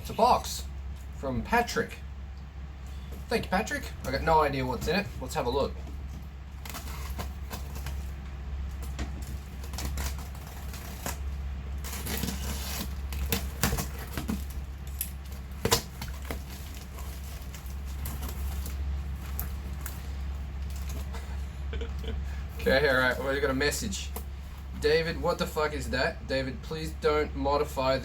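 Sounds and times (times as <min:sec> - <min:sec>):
low hum: 0:00.0 - 0:27.6
cardboard parcel crackling and rustling: 0:03.3 - 0:21.6.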